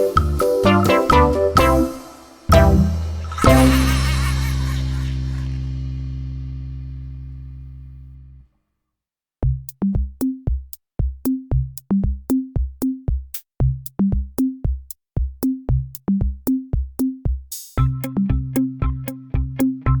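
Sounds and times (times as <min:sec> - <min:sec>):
drum machine beat: 0:00.0 - 0:05.6, 0:09.4 - 0:20.0
synth parts: 0:00.0 - 0:06.7.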